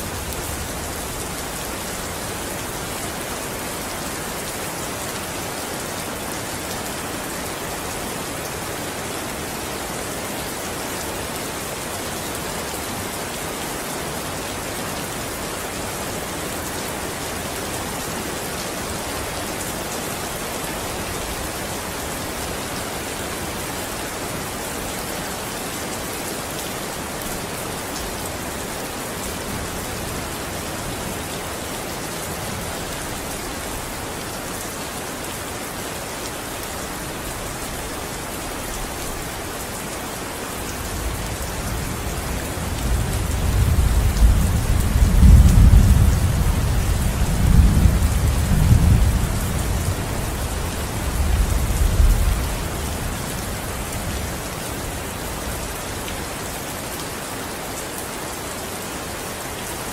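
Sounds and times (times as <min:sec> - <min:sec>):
rain pattering: 0:00.0 - 0:59.9.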